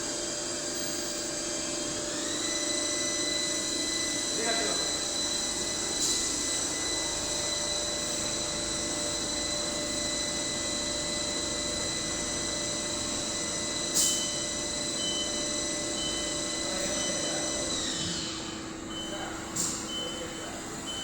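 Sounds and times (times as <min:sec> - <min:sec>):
lathe machine whine: 0:00.0 - 0:21.0
short faint beeps: 0:18.9 - 0:21.0.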